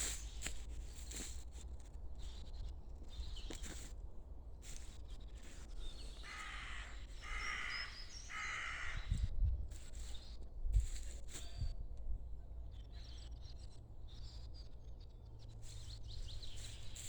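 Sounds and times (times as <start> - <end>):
crow cawing: 6.2 - 9.1
small birds chirping: 12.7 - 17.0.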